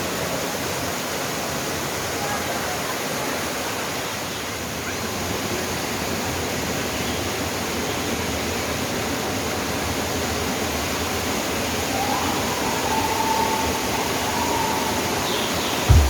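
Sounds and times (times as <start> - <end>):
waterfall rushing: 11.4 - 16.0.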